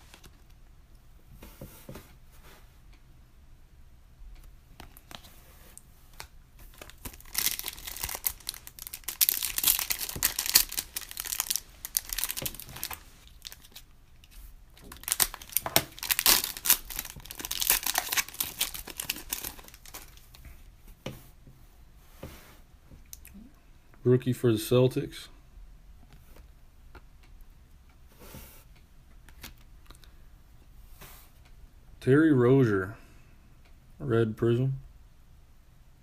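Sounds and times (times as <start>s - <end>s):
card pack wrappers tearing and crinkling: 6.6s - 20.4s.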